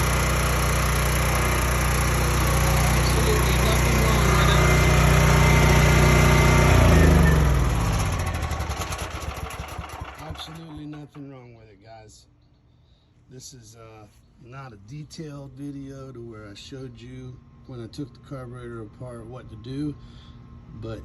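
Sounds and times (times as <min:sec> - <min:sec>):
generator engine running: 0:00.0 - 0:11.2.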